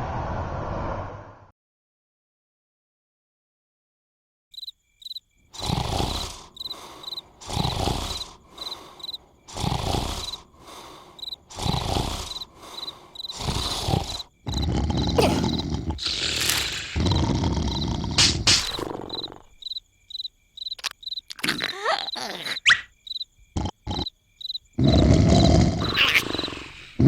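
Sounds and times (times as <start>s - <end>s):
crickets chirping: 4.5s - 27.0s
cartoon snoring: 5.5s - 19.6s, 21.3s - 22.9s, 23.5s - 24.1s, 24.8s - 27.0s.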